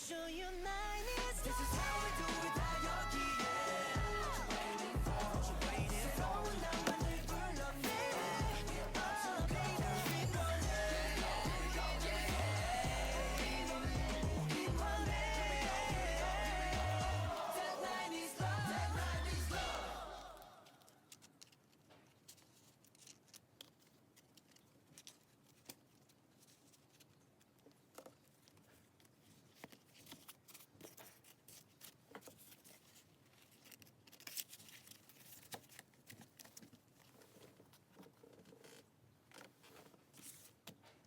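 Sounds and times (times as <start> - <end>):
parcel packaging clicks and rustles: 20.6 - 41.0.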